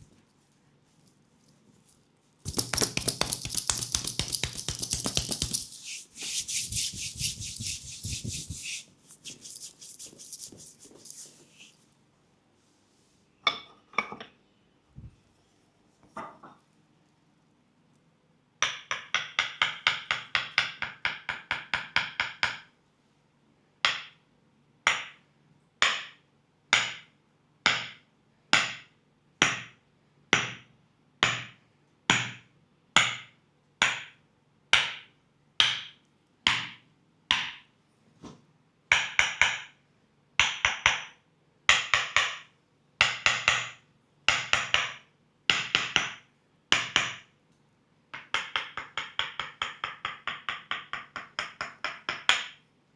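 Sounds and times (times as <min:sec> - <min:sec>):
wooden mallet tapping wooden wedge: 0:02.5 - 0:08.6, 0:35.6 - 0:35.9, 0:36.5 - 0:37.6, 0:41.7 - 0:42.4, 0:43.0 - 0:47.2, 0:48.2 - 0:52.6.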